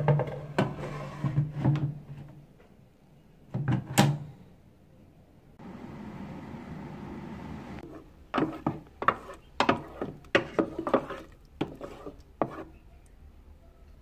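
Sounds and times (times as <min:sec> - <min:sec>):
air fryer fan whirring: 0:05.6 - 0:07.8
utensil scraping in metal basket: 0:07.8 - 0:12.8.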